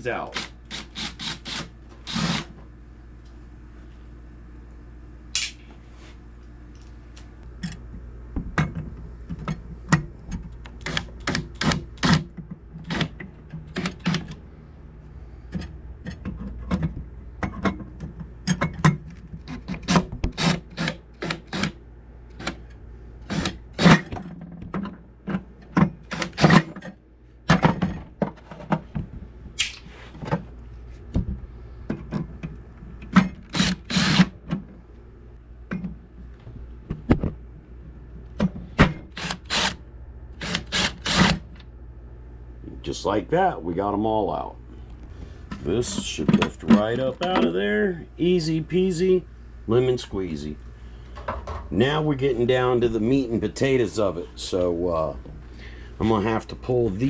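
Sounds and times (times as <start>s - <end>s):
screw gun: 0.3s - 2.5s, 10.8s - 14.3s, 19.5s - 21.8s, 23.3s - 24.1s, 26.1s - 26.8s, 33.4s - 34.4s, 39.1s - 39.8s, 40.4s - 41.4s.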